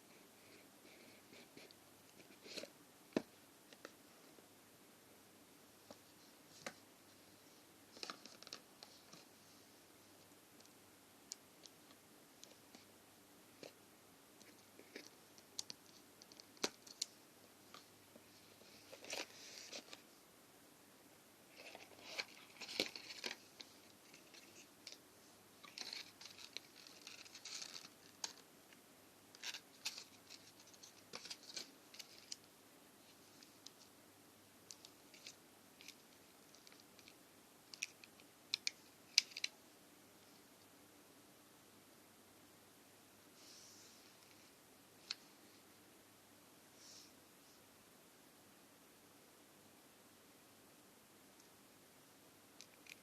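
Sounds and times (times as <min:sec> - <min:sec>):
packaging rustling: 0:21.6 - 0:25.0, 0:25.6 - 0:28.4.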